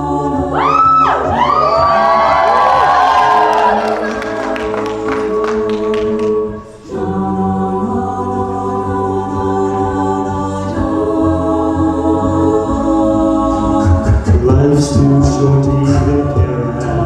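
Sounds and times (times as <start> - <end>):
a cappella group singing in harmony: 0.0 - 17.0.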